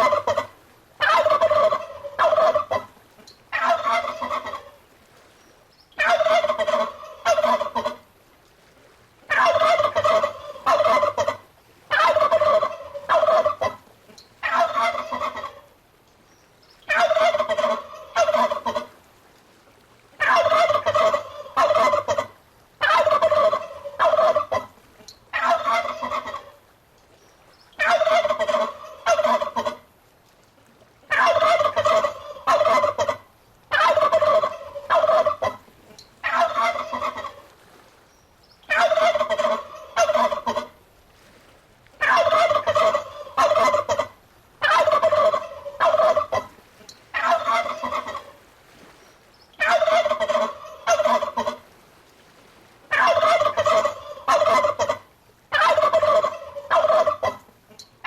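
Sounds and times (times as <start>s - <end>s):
turkeys gobbling: 0.0s - 2.9s, 3.5s - 4.8s, 6.0s - 8.0s, 9.3s - 13.8s, 14.4s - 15.7s, 16.9s - 18.9s, 20.2s - 24.7s, 25.3s - 26.6s, 27.8s - 29.8s, 31.1s - 35.6s, 36.2s - 37.5s, 38.7s - 40.8s, 42.0s - 48.4s, 49.6s - 51.6s, 52.9s - 57.9s.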